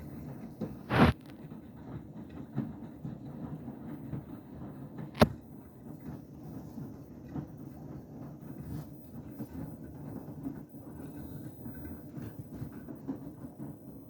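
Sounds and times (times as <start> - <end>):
washing machine churning: 0.0 - 14.0.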